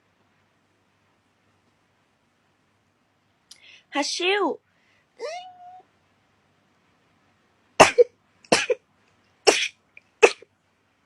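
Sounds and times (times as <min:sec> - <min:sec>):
person sneezing: 0:09.5 - 0:10.4.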